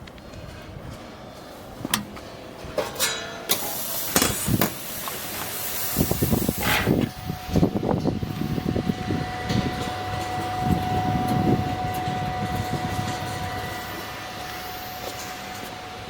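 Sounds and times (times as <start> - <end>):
roasting machine low rumble: 0.0 - 16.0
motor whine: 3.8 - 16.0.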